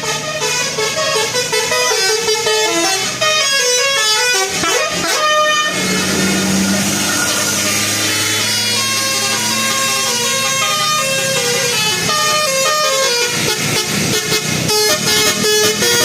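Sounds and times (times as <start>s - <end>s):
musical bus air horn melody: 0.0s - 16.0s.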